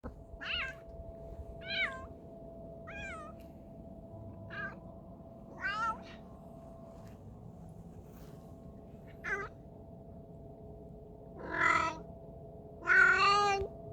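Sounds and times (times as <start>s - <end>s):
steady faint tone: 0.0s - 11.4s
cat meowing oddly: 5.6s - 6.2s, 9.2s - 9.5s, 11.4s - 12.0s, 12.8s - 13.7s.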